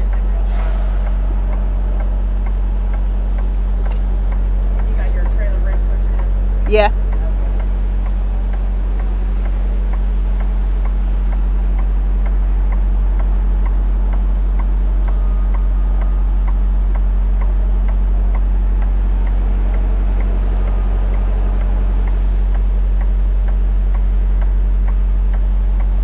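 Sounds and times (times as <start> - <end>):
diesel truck engine idling: 0.0 - 26.0.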